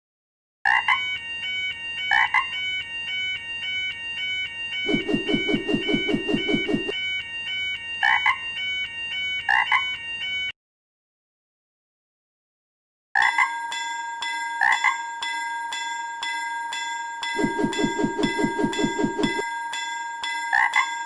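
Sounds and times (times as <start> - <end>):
two-tone electronic warning bell: 1.0 - 10.5, 13.2 - 21.0
fast low knocks: 4.9 - 6.9.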